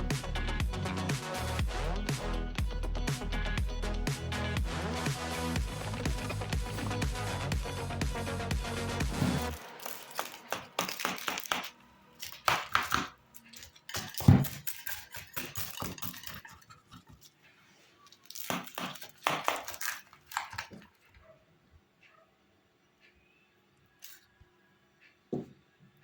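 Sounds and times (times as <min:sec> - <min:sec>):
kitchen rustling and clattering: 0:09.1 - 0:21.0.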